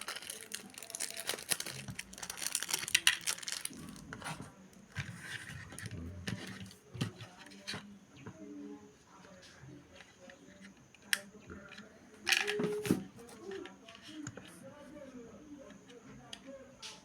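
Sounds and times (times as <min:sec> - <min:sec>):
packaging crinkling and rustling: 0:00.0 - 0:04.3.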